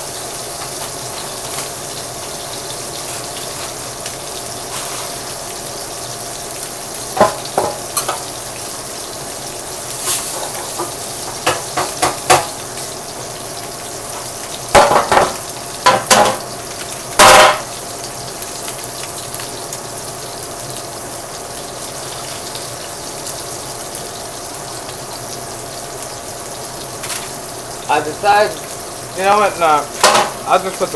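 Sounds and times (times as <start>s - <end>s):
meat sizzling in a pan: 0.0s - 30.9s
utensils clattering on cookware: 7.2s - 8.3s, 10.0s - 12.5s, 14.2s - 16.5s, 17.2s - 17.7s, 30.0s - 30.9s.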